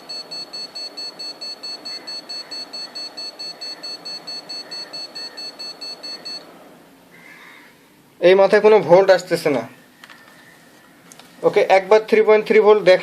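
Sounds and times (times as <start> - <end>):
electronic buzzer beeping rapidly: 0.0 - 6.4.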